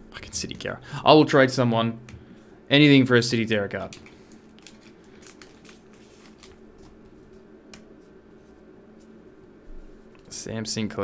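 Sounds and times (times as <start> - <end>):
low steady hum: 0.0 - 11.0
trading cards clicking and rustling: 3.8 - 8.0.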